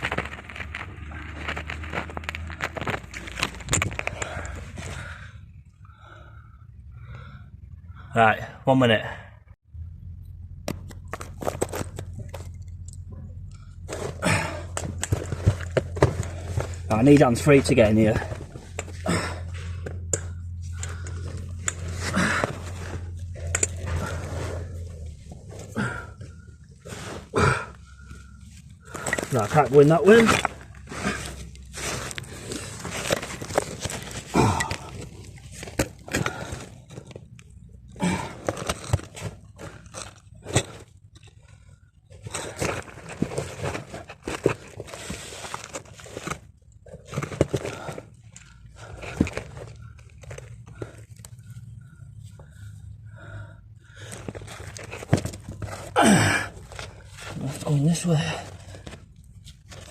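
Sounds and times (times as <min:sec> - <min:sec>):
dry leaves and twigs crunching: 0:00.0 - 0:05.1, 0:20.7 - 0:37.3
low hum: 0:09.4 - 0:29.3.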